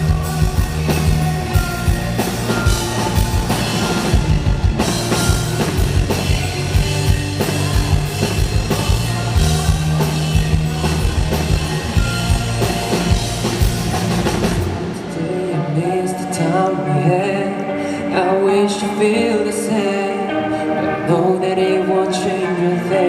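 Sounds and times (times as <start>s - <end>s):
bass: 0.0s - 15.9s
drum kit: 0.0s - 15.9s
guitar: 0.0s - 23.0s
keyboards: 0.0s - 23.0s.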